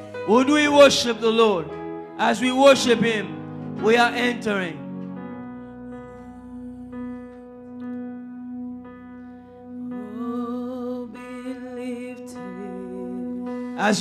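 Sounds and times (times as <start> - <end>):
soft worship music: 0.0 - 14.0
person singing: 9.8 - 14.0.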